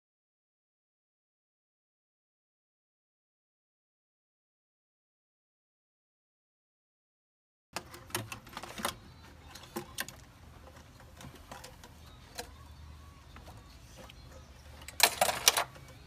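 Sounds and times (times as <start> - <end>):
parts and tools clicking: 7.8 - 16.0.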